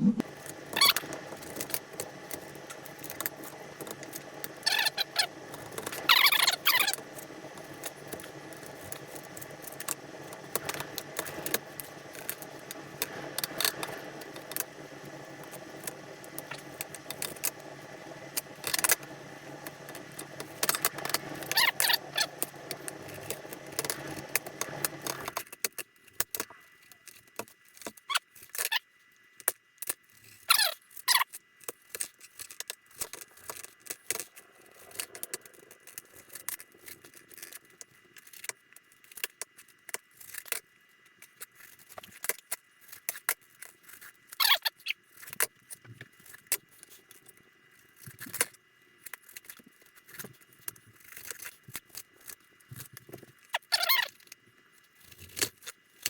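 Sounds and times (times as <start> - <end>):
mixer motor hum: 0.0 - 25.4
meat grinder squeaks and clicks: 53.5 - 54.2.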